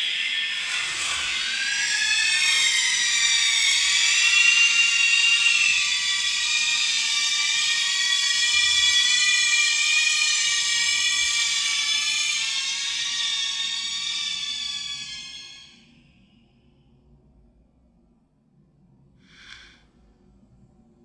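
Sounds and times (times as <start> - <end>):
long high-pitched scream: 0.0 - 16.3.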